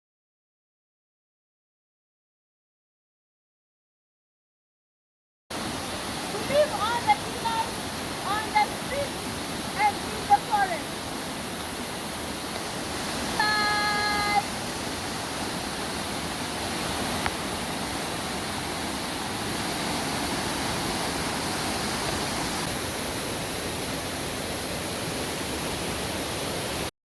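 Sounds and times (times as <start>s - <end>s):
waterfall rushing: 5.5s - 26.9s.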